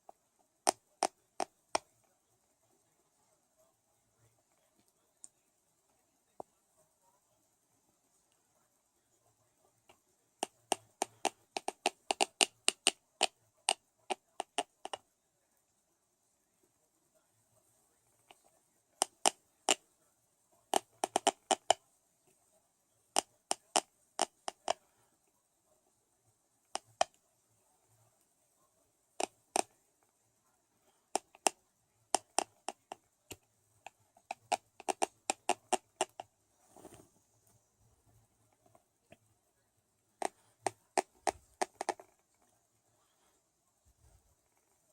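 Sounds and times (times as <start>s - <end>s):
teeth clicking together: 10.4s - 15.0s, 20.7s - 21.8s, 23.2s - 24.8s, 31.1s - 36.2s.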